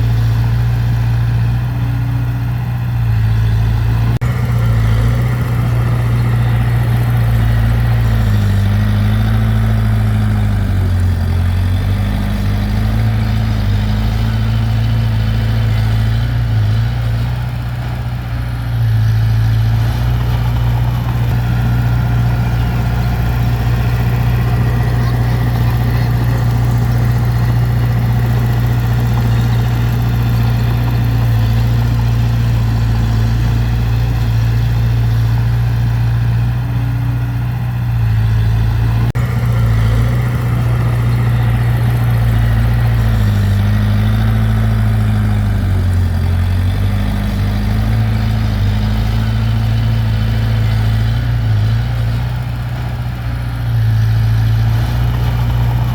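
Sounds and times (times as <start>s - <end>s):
heavy diesel engine running: 0.0s - 55.9s.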